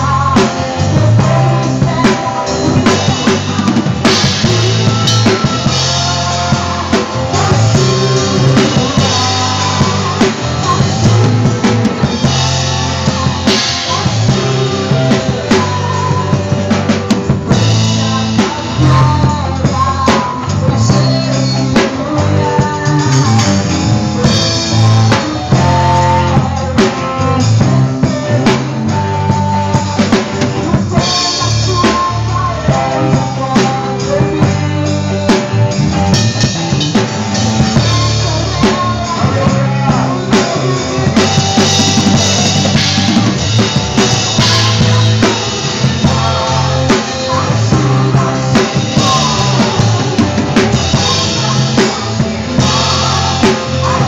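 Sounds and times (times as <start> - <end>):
drum kit playing: 0.0 - 54.0
recorded worship song: 0.0 - 54.0.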